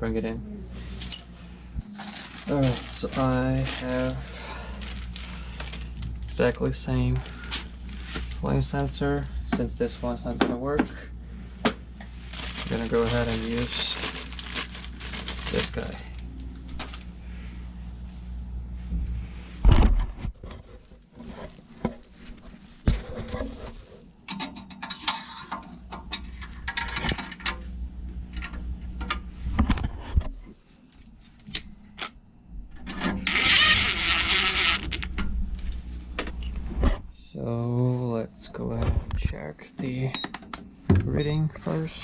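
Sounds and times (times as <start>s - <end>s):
steady low hum: 0.0s - 42.0s
rustling: 1.8s - 8.5s, 12.2s - 17.2s.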